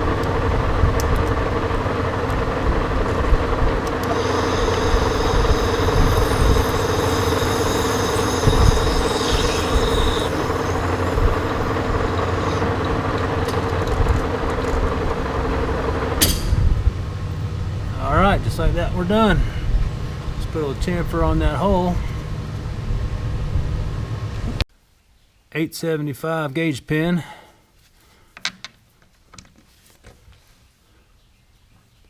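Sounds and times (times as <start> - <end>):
high whine of cutting tool: 0.0 - 16.2
lathe running: 0.0 - 16.2.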